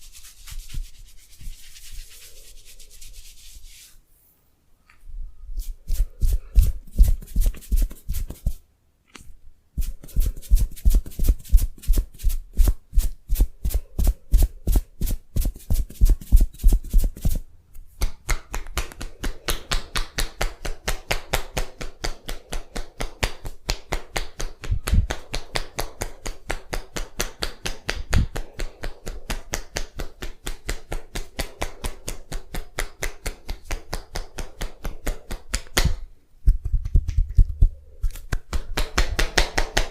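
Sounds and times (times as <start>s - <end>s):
hands striking body rhythmically: 13.7s - 39.9s.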